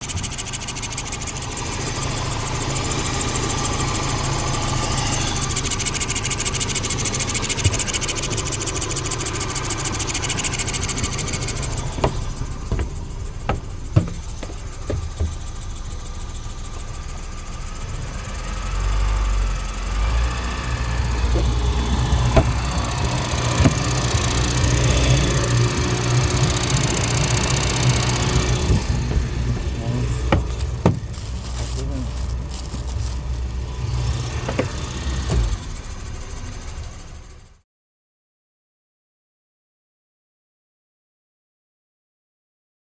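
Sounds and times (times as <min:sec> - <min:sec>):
outboard engine running: 0:00.0 - 0:37.6
sharp clicks: 0:19.8 - 0:35.6.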